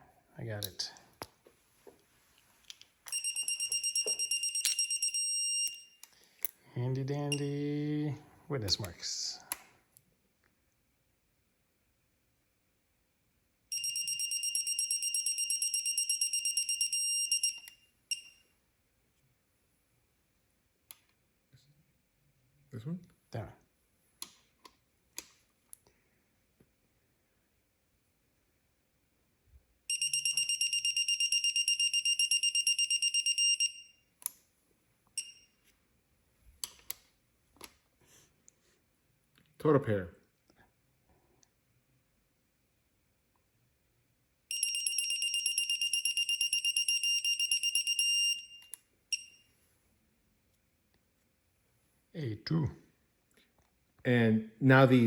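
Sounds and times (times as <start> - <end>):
torque wrench beeping: 3.1 - 6.1, 13.7 - 18.4, 29.9 - 34.0, 35.2 - 35.5, 44.5 - 49.4
click: 20.9 - 21.2, 34.2 - 34.4, 48.6 - 49.3.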